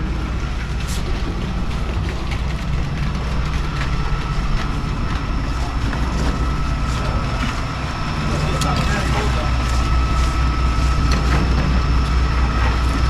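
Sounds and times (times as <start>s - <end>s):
diesel truck engine rumbling: 0.0s - 13.0s
faint steady whine: 0.0s - 13.0s.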